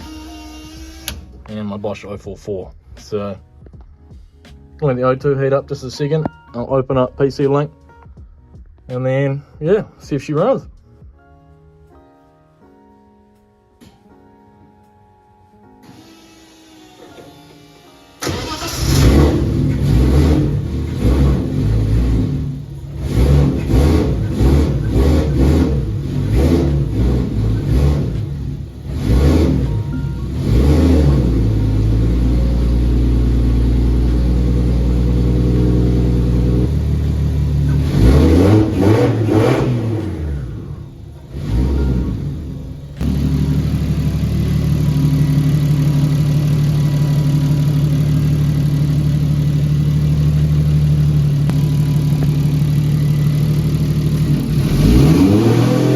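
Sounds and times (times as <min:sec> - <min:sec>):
car engine idling: 0:18.2 - 0:55.9
car engine revving: 0:18.2 - 0:55.9
car engine starting: 0:18.2 - 0:55.9.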